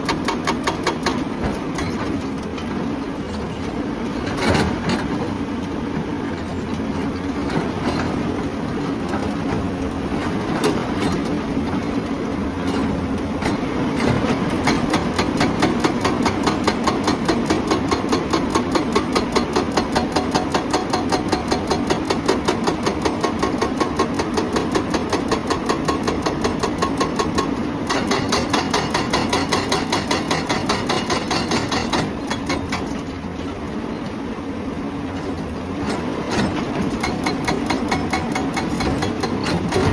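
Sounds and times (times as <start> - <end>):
hydraulic breaker hammering rock: 0.0 - 2.3, 13.4 - 33.1, 35.9 - 39.9.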